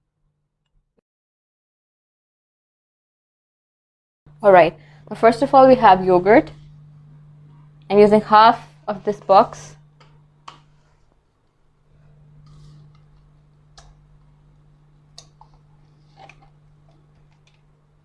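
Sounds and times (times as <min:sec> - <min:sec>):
low steady hum: 0:04.3 - 0:18.0.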